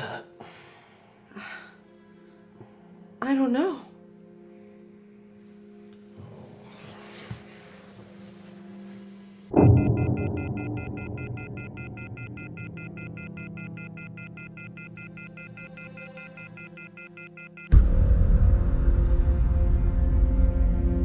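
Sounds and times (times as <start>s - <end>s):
dark film music: 0.0s - 21.0s
deep low boom: 9.5s - 13.1s, 17.7s - 21.0s
telephone off-hook warning tone: 9.7s - 17.7s.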